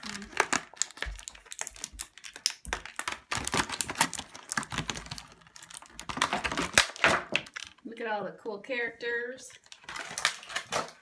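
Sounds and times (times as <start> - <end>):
plastic toy pieces clattering: 9.7 - 11.0.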